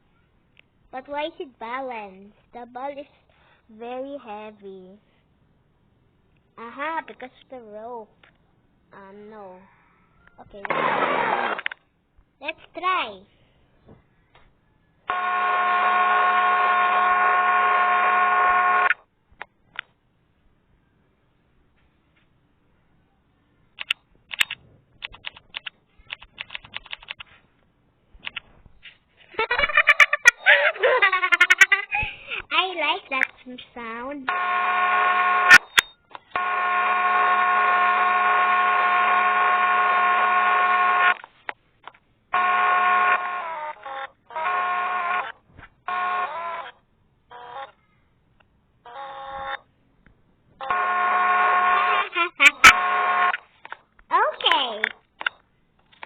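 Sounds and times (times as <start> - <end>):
short clicks: 10.6 - 11.8, 23.8 - 27.3
loud electronic buzz: 10.7 - 11.7, 15.1 - 18.9, 34.3 - 35.8, 36.4 - 41.2, 42.4 - 46.6, 50.6 - 53.4.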